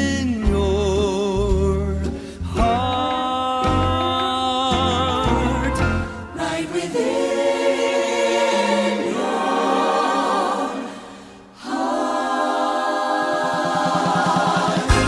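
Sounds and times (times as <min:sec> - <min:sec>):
choir singing a cappella: 0:05.1 - 0:15.0.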